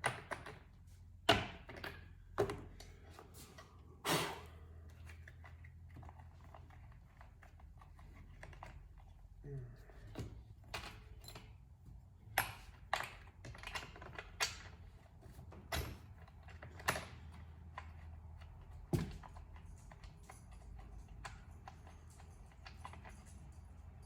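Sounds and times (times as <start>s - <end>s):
hand tools clicking and knocking: 4.9s - 24.0s.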